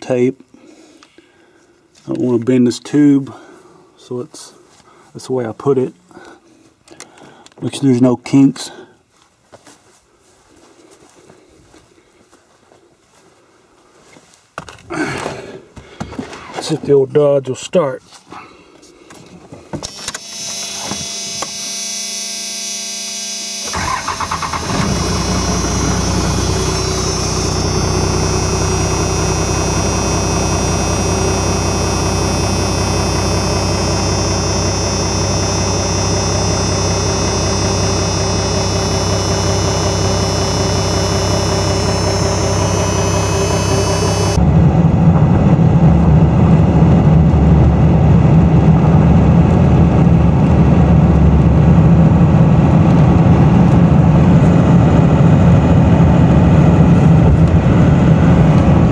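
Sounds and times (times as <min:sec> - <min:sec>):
diesel engine running: 0:23.6 - 0:58.9.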